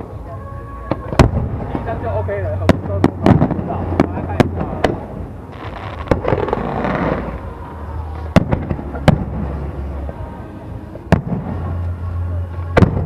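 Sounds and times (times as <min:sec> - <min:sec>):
fireworks bursting: 0:00.0 - 0:13.0
hissing crackle: 0:00.8 - 0:13.0.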